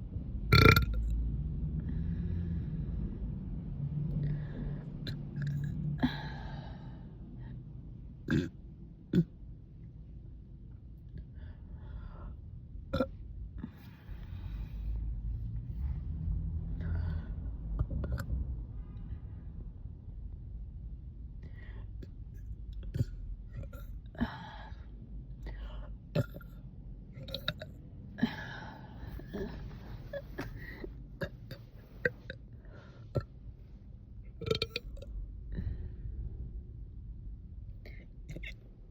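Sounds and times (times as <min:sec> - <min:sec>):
girl burping: 0:00.5 - 0:01.0, 0:08.3 - 0:08.5, 0:34.4 - 0:35.0.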